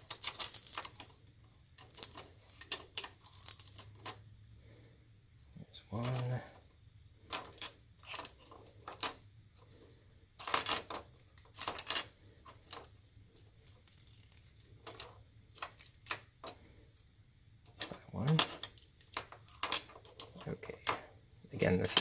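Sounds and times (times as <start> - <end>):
small plastic parts clicking: 0.0 - 4.2, 7.2 - 9.7, 10.4 - 16.8, 17.6 - 21.1
backing paper rustling: 5.9 - 6.6.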